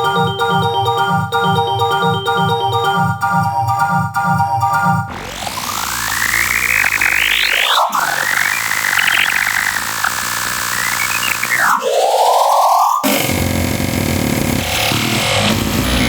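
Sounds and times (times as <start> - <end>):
harsh synthesized note clusters: 0.0 - 11.8.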